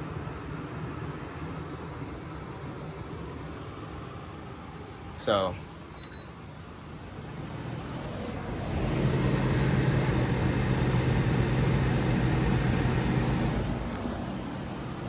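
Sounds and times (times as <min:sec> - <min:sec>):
electric fan motor humming: 0:07.3 - 0:15.0.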